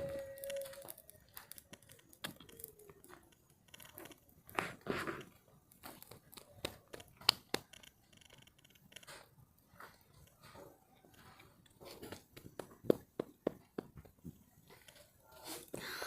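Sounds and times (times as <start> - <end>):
campfire crackling and snapping: 0.0 - 9.4.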